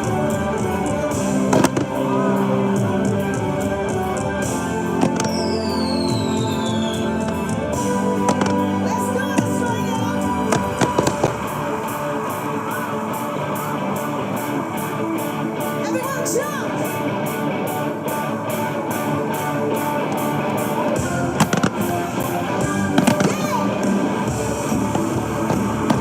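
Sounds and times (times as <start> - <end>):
guitar music: 0.0 - 26.0
firework bangs: 5.0 - 12.0, 20.9 - 26.0.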